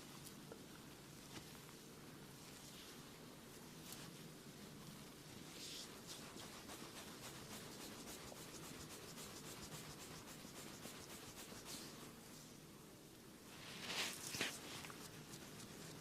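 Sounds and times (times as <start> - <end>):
faint quick scratching strokes: 4.9 - 12.6, 13.5 - 16.0.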